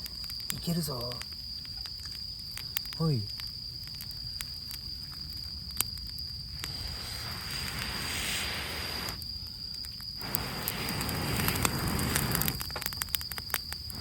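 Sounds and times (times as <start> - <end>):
fire crackles and pops: 0.0 - 14.0
rushing flame noise: 3.9 - 14.0.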